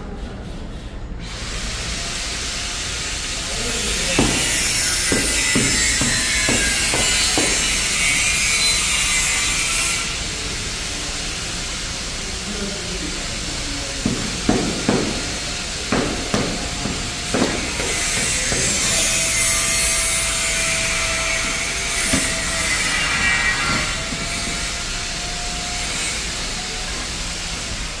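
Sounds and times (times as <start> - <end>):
trowel scraping across mortar: 3.8 - 10.0
hand tool knocks: 4.1 - 7.9, 14.0 - 19.2.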